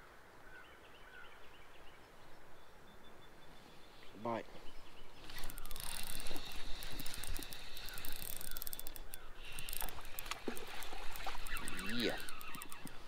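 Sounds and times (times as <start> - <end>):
fishing reel clicking and whirring: 5.3 - 13.0.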